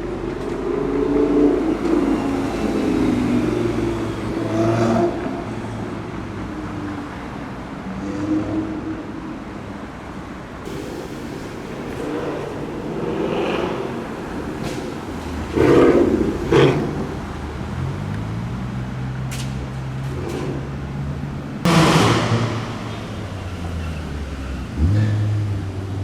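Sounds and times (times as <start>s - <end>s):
sports car engine revving: 10.7s - 18.6s.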